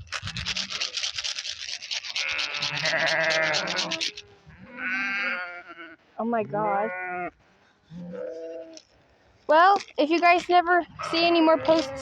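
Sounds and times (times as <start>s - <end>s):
fast scratchy clicking: 0.0s - 4.2s
sheep bleating: 2.2s - 7.4s, 11.0s - 12.0s.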